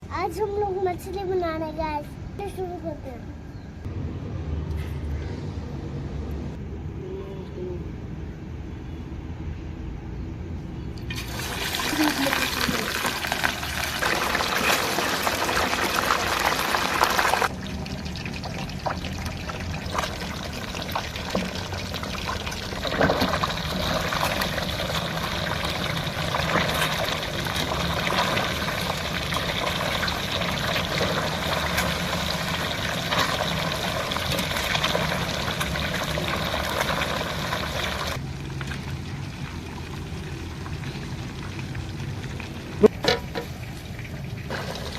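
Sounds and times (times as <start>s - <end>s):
water pouring and splashing: 11.0s - 44.9s
water trickling: 11.0s - 44.9s.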